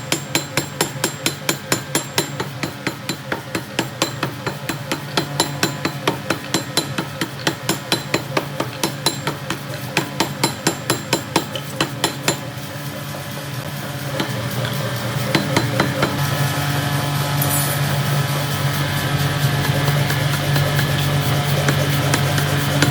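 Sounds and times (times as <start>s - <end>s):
forging hammer striking metal: 0.0s - 12.6s, 14.0s - 16.3s
machine humming: 1.0s - 22.9s.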